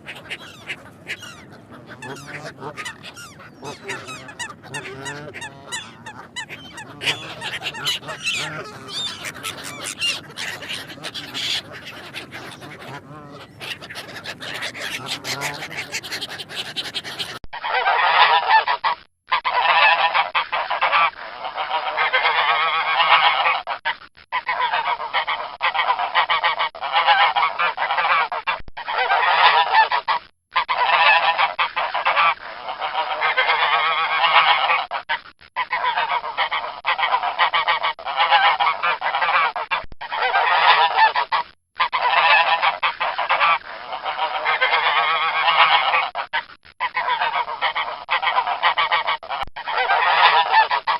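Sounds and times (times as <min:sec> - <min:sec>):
geese honking: 0:00.0 - 0:18.4, 0:42.0 - 0:46.1, 0:49.8 - 0:50.8.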